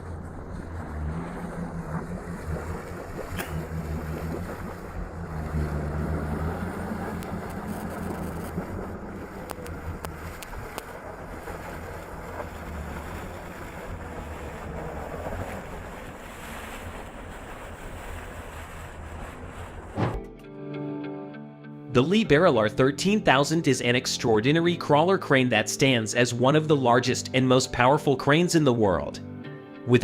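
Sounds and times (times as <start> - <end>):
steady rushing noise: 0.0 - 20.2
low engine drone: 0.0 - 20.4.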